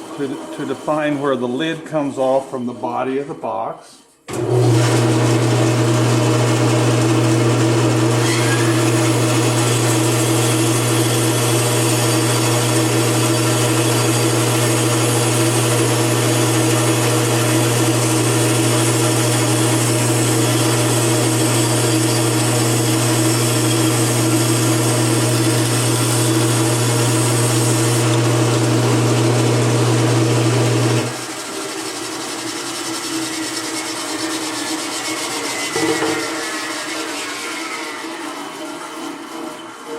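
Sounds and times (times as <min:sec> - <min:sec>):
saw blade cutting wood: 0:00.0 - 0:01.9, 0:08.2 - 0:28.3, 0:31.1 - 0:39.9
bandsaw motor hum: 0:04.3 - 0:39.9.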